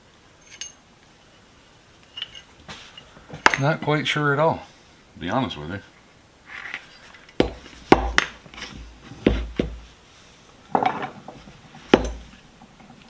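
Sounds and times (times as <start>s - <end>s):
metal parts clanking: 0.4s - 0.8s, 2.0s - 3.9s, 10.7s - 13.0s
scraping and shuffling: 0.4s - 4.8s, 6.5s - 13.0s.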